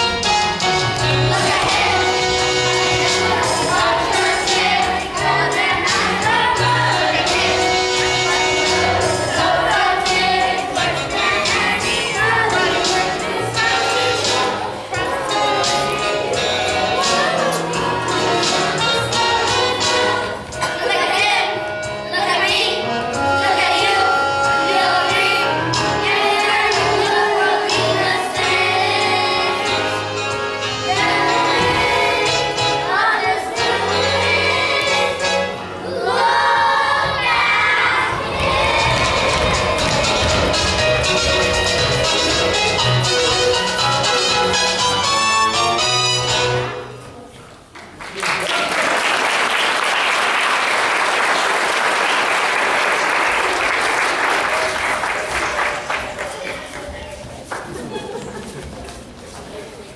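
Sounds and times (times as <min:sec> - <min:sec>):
instrumental accompaniment: 0:00.0 - 0:47.2
children's choir singing: 0:00.0 - 0:47.3
audience applauding: 0:47.7 - 0:58.2.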